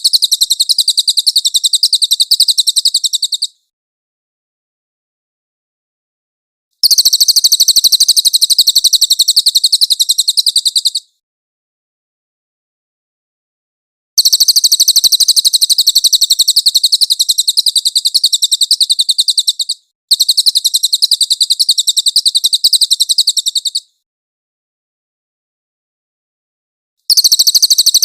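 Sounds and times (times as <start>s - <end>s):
bird trilling rapid chirps: 0.0s - 3.6s, 6.8s - 11.1s, 14.2s - 23.9s, 27.1s - 28.0s.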